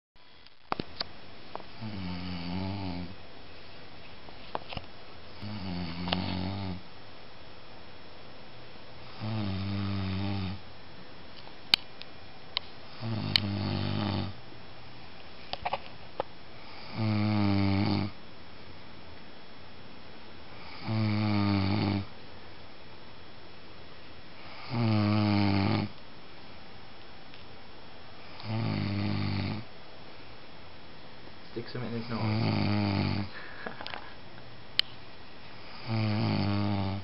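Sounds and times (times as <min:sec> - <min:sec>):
man snoring: 0:01.8 - 0:03.2, 0:05.4 - 0:06.8, 0:09.0 - 0:10.6, 0:12.9 - 0:14.4, 0:16.6 - 0:18.2, 0:20.5 - 0:22.1, 0:24.4 - 0:26.0, 0:28.2 - 0:29.7, 0:31.8 - 0:33.5, 0:35.6 - 0:37.0.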